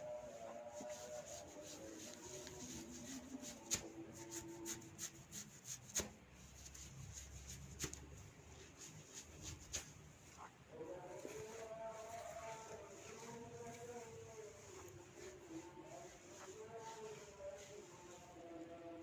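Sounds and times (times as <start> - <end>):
hands rubbing through hair: 0.0 - 18.6.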